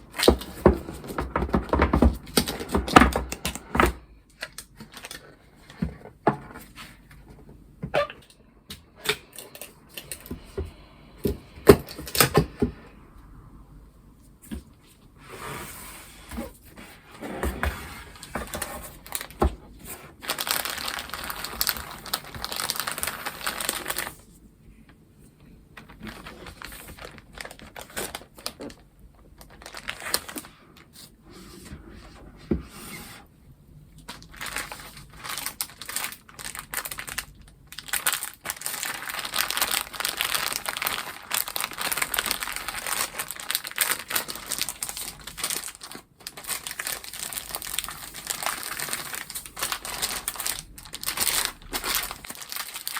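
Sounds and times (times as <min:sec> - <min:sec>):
packaging crinkling and rustling: 0:00.0 - 0:07.3, 0:09.0 - 0:10.6, 0:15.4 - 0:24.4, 0:25.8 - 0:31.2, 0:34.0 - 0:52.9
packaging tearing: 0:20.2 - 0:24.2, 0:34.2 - 0:52.9.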